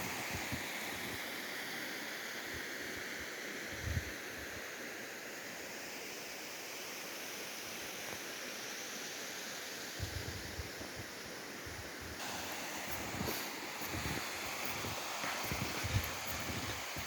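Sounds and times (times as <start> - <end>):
wind bumps on microphone: 10.0 - 10.8, 12.9 - 17.0
waterfall rushing: 12.2 - 17.0.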